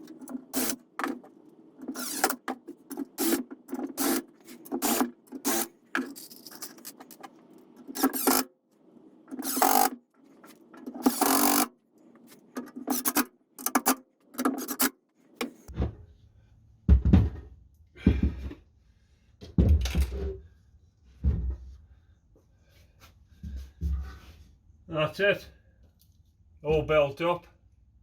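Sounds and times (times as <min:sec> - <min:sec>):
tools scraping and knocking: 0:00.0 - 0:08.5, 0:09.3 - 0:16.0.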